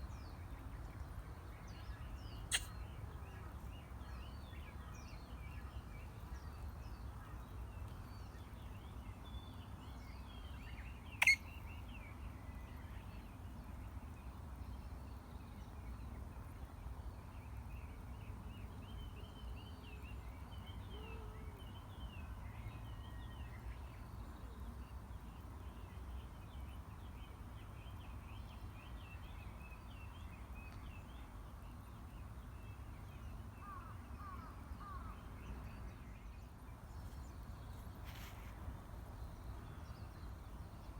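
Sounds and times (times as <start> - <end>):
faint bird chirps: 2.4 - 3.1, 11.2 - 11.7.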